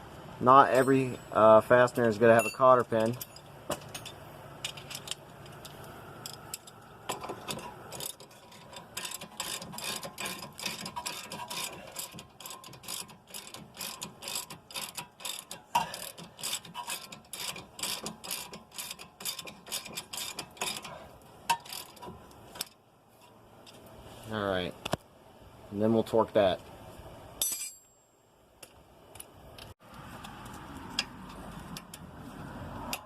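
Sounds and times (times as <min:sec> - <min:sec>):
ratchet wrench clicking: 0:04.6 - 0:22.8.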